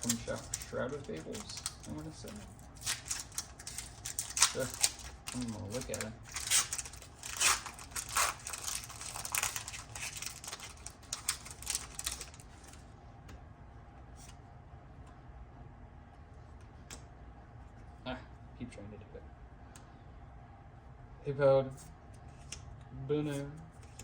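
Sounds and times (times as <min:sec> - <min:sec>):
foil wrapper crinkling and tearing: 0:00.0 - 0:12.8.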